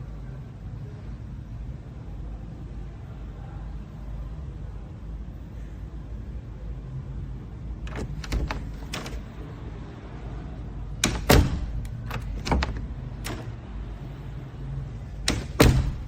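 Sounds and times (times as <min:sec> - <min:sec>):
door lock and lever clicking: 0:07.8 - 0:09.4, 0:10.9 - 0:13.6, 0:15.2 - 0:16.0.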